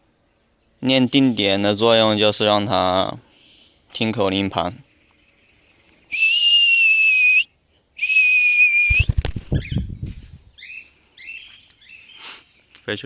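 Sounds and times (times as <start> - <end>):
bird chirps: 4.4 - 7.8, 8.8 - 13.0
long whistle blasts: 6.1 - 9.1
wings fluttering: 8.5 - 12.1.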